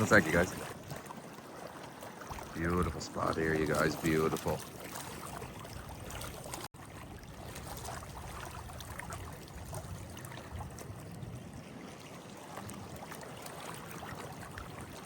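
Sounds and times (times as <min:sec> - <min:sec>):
water trickling and lapping: 0:00.0 - 0:15.0
wind rumble on microphone: 0:05.2 - 0:15.0.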